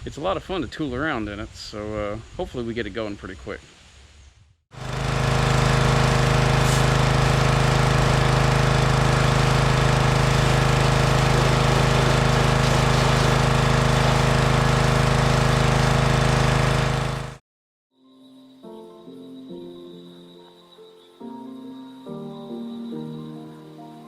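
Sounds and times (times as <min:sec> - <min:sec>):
motor humming and pulsing: 0:04.8 - 0:17.4.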